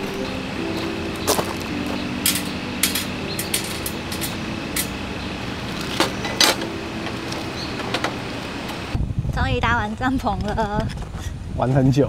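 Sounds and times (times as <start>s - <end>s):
background music of held notes: 0.0s - 9.0s.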